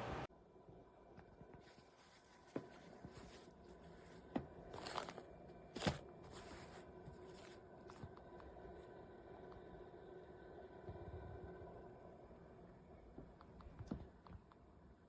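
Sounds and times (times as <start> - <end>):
crinkling: 1.6 - 8.4.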